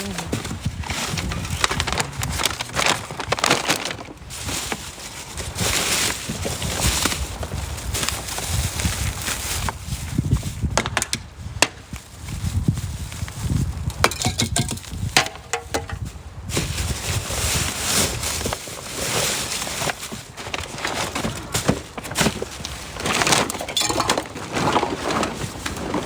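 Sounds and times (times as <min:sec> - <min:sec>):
glass objects clinking and clattering: 0:14.0 - 0:15.9, 0:23.2 - 0:25.1.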